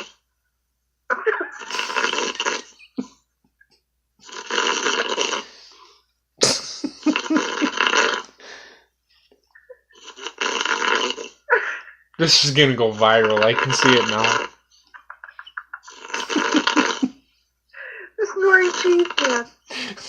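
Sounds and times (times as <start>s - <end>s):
man snoring heavily: 1.6s - 2.8s, 4.2s - 5.8s, 10.0s - 11.4s, 12.4s - 14.6s, 15.9s - 17.1s.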